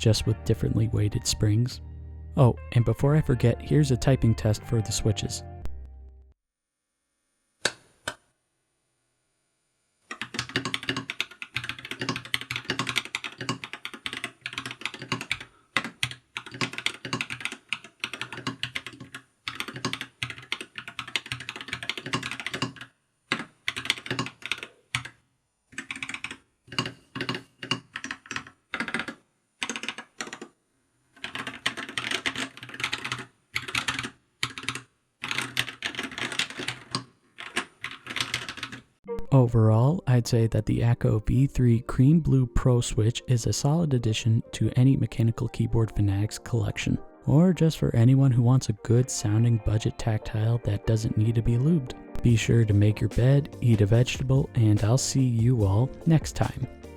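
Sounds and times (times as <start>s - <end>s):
mechanical keyboard typing: 10.1s - 25.2s, 25.8s - 30.5s, 31.2s - 38.8s.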